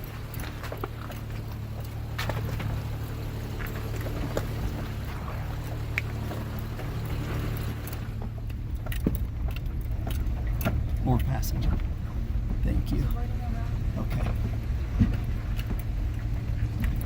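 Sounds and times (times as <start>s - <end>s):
tyres rolling over loose rock: 0.0s - 17.0s
vehicle engine at low revs: 0.0s - 17.0s.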